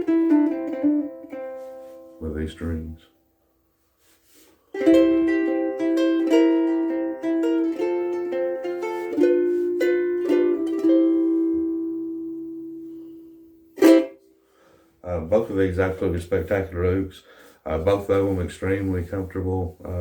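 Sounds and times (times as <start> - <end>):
ukulele plucked melody: 0.0 - 2.2, 4.7 - 14.2.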